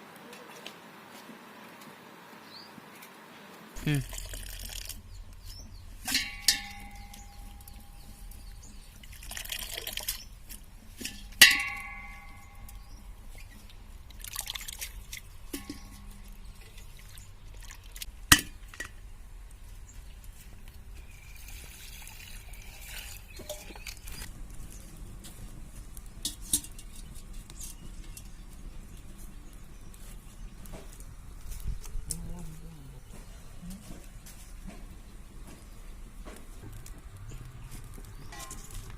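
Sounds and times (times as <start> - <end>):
liquid pouring and dripping: 3.9 - 5.2, 6.1 - 12.8, 13.4 - 18.1, 21.1 - 24.3
metal pots clinking: 3.9 - 17.2, 18.2 - 19.1, 21.0 - 24.3, 26.2 - 28.5, 38.2 - 38.9.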